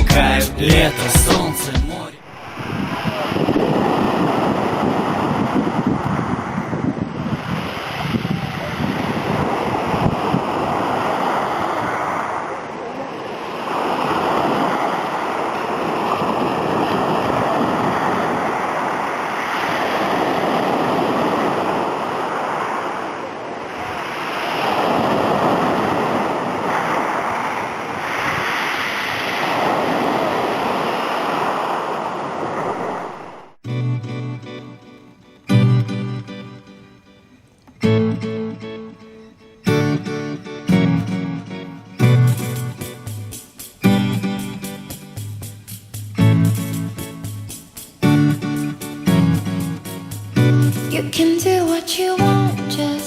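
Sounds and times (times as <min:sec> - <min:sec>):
sea waves breaking on shore: 0:01.4 - 0:33.6
wind buffeting microphone: 0:02.4 - 0:12.4, 0:13.5 - 0:33.1.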